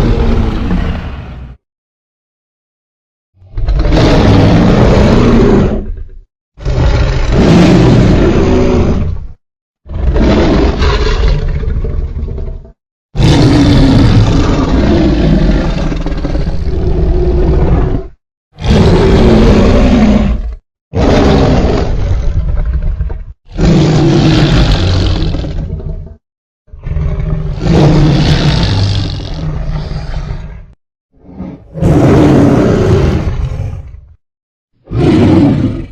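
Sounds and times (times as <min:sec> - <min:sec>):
monster roars: 0:00.0 - 0:01.2, 0:03.4 - 0:06.0, 0:06.6 - 0:09.1, 0:13.2 - 0:22.4, 0:23.5 - 0:25.7, 0:26.7 - 0:30.6, 0:31.2 - 0:34.1, 0:34.8 - 0:35.9.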